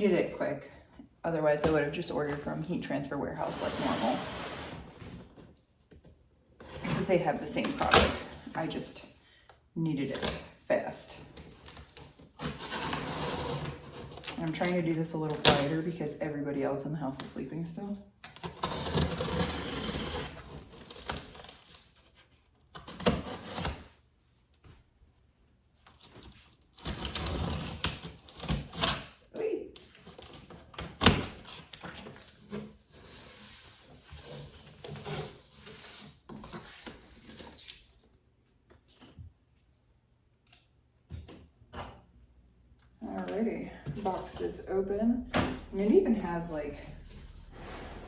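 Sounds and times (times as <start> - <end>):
cardboard scraping and rustling: 3.4 - 5.8.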